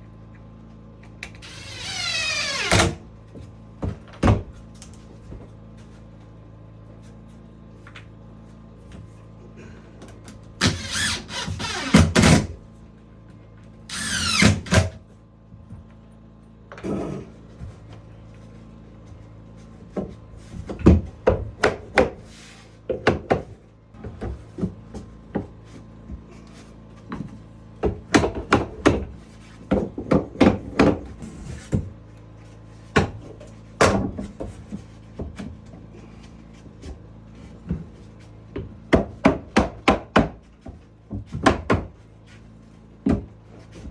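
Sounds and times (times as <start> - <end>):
steady low hum: 0.0 - 43.9
power tool running: 10.6 - 12.5, 13.9 - 15.0.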